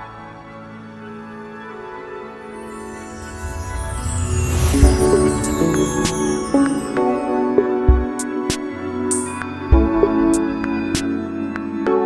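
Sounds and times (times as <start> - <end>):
calm new-age music: 0.0 - 12.0.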